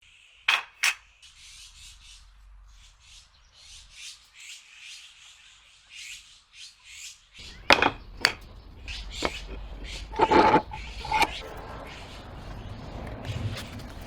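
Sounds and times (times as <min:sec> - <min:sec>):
hand tool scraping wood: 0:07.6 - 0:11.4.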